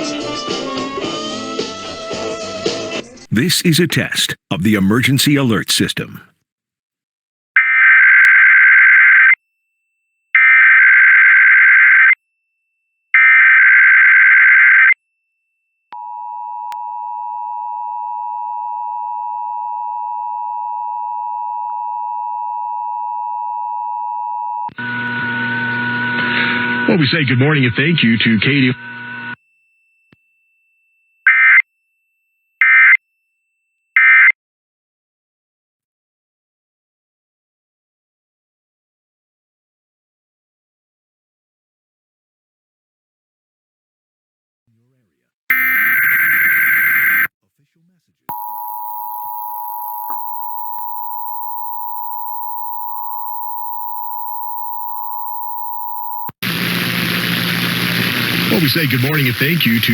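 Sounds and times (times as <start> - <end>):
digital data tone bursts: 45.5 - 47.3.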